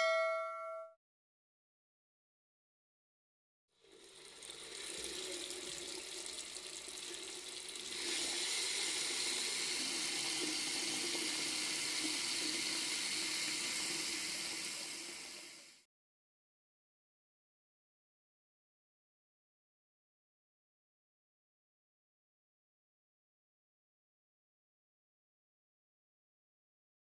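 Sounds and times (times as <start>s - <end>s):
water running from faucet: 3.8s - 15.9s.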